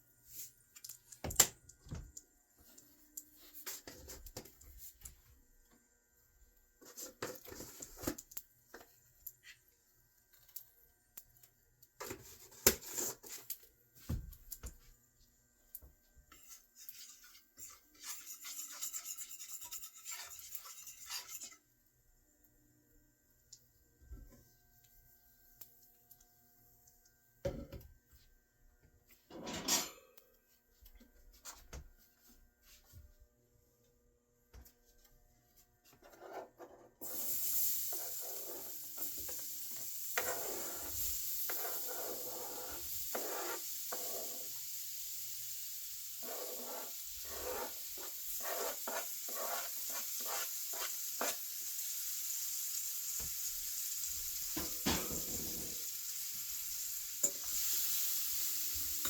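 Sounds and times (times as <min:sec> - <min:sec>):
utensil stirring and scraping: 0:12.0 - 0:13.5, 0:16.3 - 0:21.7, 0:35.9 - 0:44.7, 0:46.1 - 0:51.6
kitchen utensils clinking: 0:29.3 - 0:30.2, 0:54.6 - 0:55.8
food sizzling in a hot pan: 0:37.0 - 0:59.0.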